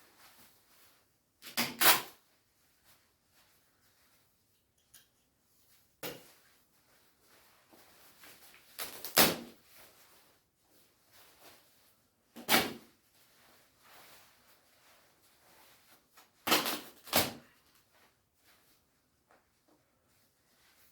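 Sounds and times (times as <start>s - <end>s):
nylon fabric ripping: 1.4s - 2.2s, 8.7s - 9.6s, 16.4s - 17.6s.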